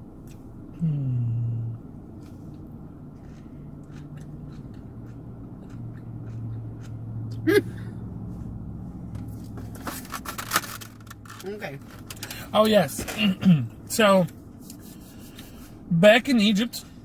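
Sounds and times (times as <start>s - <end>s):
low steady hum: 0.0s - 17.0s
short hummed tone: 0.7s - 1.9s
people chewing food: 1.7s - 7.7s.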